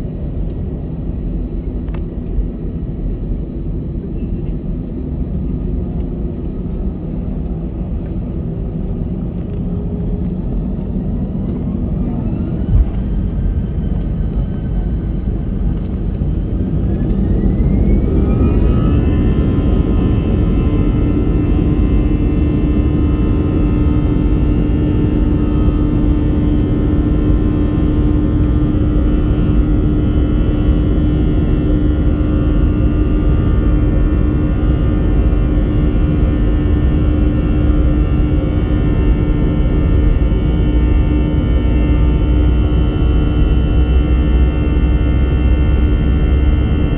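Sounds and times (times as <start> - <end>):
jet engines spooling up: 10.2 - 21.2.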